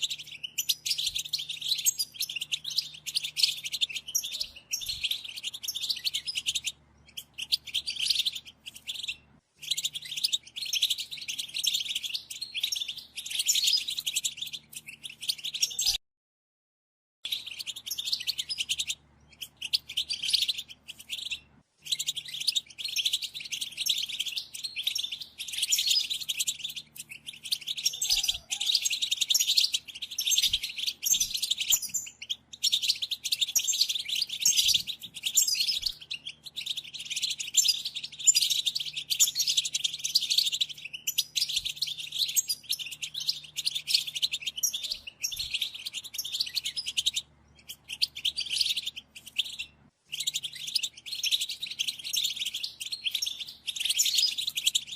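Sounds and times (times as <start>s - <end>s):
goldfinch twittering song: 0.0s - 16.0s, 17.2s - 54.9s.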